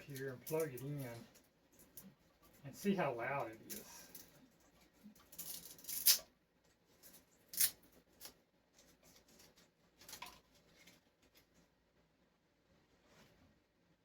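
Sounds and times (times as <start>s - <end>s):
light scratching: 0.0s - 6.3s.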